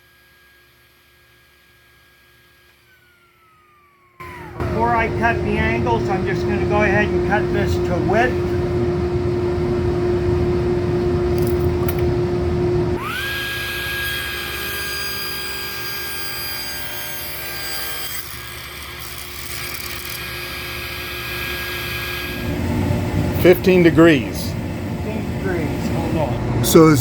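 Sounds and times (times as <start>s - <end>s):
high whine: 4.2s - 13.2s
table saw ripping a board: 13.0s - 22.4s.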